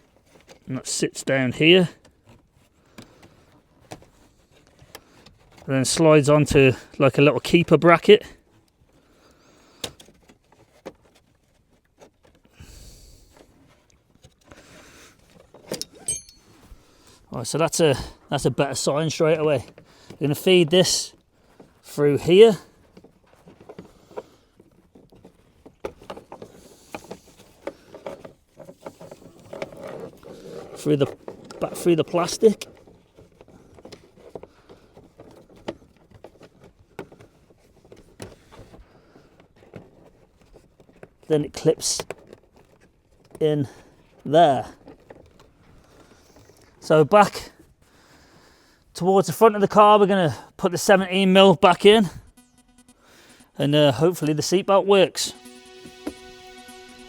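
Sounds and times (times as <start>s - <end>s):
seatbelt rustling through plastic trim: 8.4s - 12.6s, 22.8s - 41.3s
belt rubbing and sliding: 22.3s - 41.2s.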